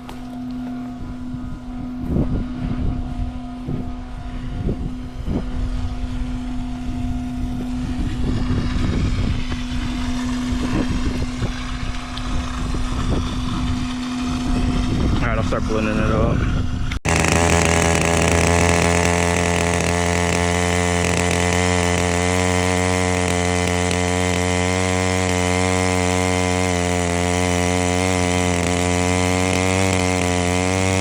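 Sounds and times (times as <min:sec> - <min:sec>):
vacuum pump humming: 0:00.0 - 0:31.0
suction hose rumbling: 0:17.0 - 0:31.0.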